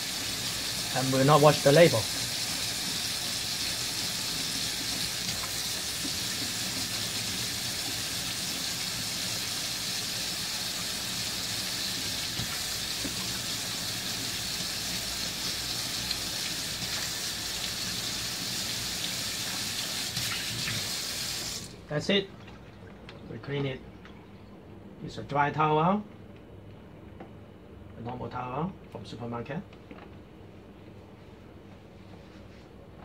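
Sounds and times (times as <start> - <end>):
tap water running: 0.0 - 23.3.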